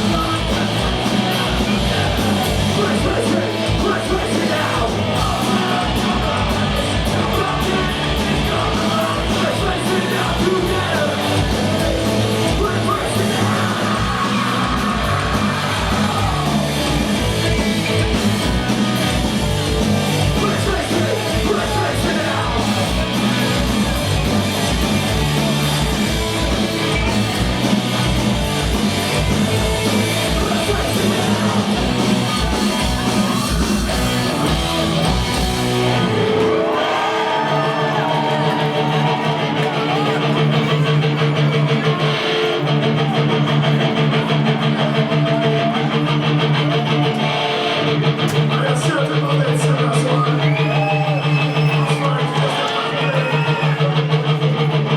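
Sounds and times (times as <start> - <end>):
singing vocals: 0.0 - 19.0, 19.9 - 23.9, 29.5 - 34.6
distorted electric guitars: 0.0 - 54.9
fast drums: 0.0 - 54.9
punk rock band playing live: 0.0 - 54.9.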